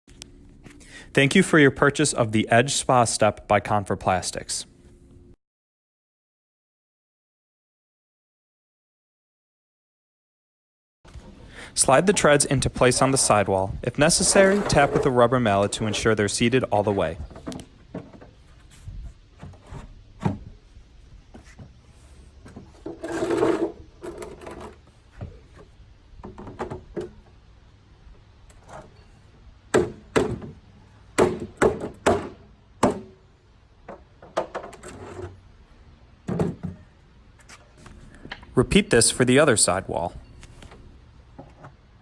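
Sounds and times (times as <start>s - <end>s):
plastic sliding rub: 11.1s - 25.8s.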